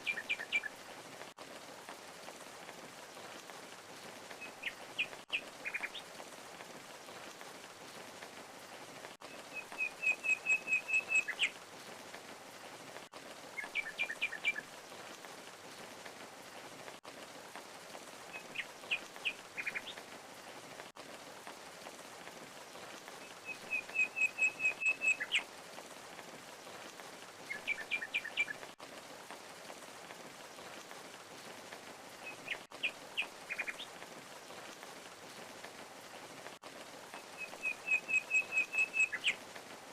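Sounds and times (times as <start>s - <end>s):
songbird chirping and trilling: 9.3s - 11.5s, 23.3s - 25.4s, 37.2s - 39.4s.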